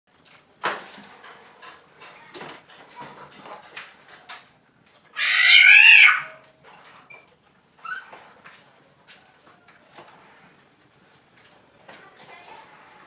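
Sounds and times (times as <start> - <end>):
bird harsh wavering call: 5.2 - 6.3.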